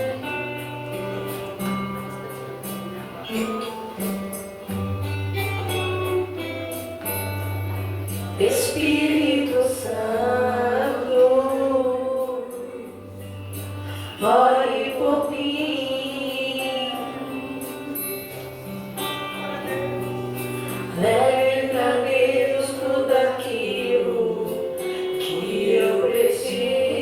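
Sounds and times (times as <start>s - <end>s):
gospel song with choir: 8.3s - 13.2s, 13.8s - 18.4s, 20.9s - 27.0s.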